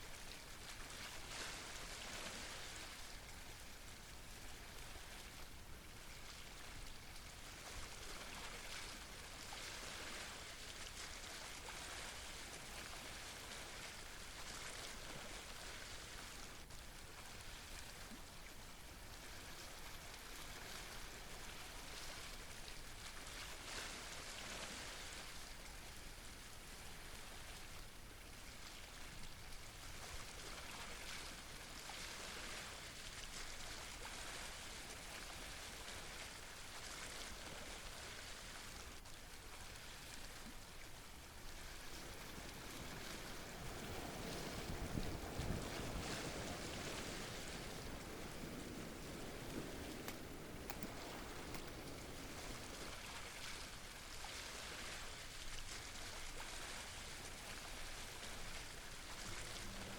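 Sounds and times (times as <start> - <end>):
seawater washing on rocks: 41.3 - 56.4.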